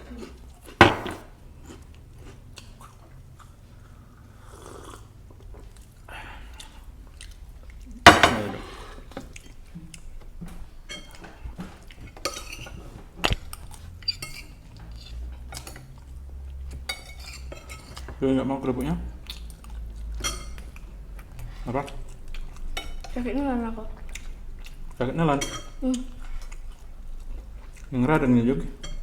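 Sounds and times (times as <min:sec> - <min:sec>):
quiet chewing: 0:00.0 - 0:08.0, 0:08.6 - 0:18.2, 0:19.2 - 0:29.0
spoons clinking on plates: 0:00.8 - 0:01.3.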